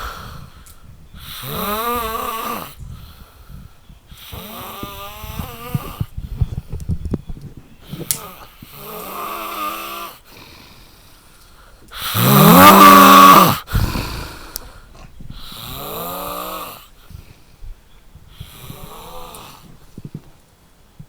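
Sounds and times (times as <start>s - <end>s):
man snoring: 1.2s - 2.8s, 8.7s - 10.8s, 12.0s - 14.8s, 15.4s - 16.9s, 18.4s - 19.7s.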